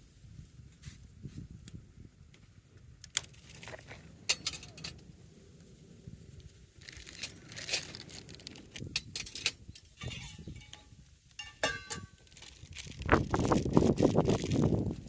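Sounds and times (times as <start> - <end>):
clatter and rustle: 2.3 - 15.0
ringing metal taps: 9.3 - 12.2.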